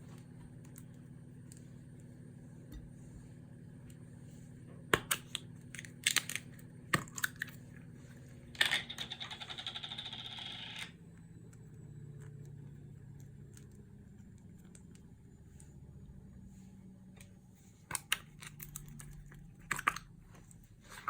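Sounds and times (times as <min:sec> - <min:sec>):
sharp clicks and crinkles: 0:05.0 - 0:07.8, 0:17.2 - 0:21.0.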